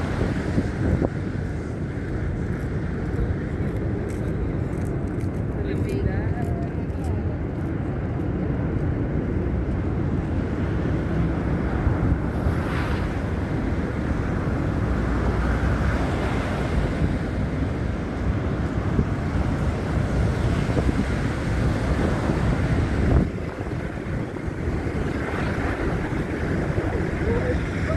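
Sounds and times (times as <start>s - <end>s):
wind buffeting microphone: 0.0s - 27.9s.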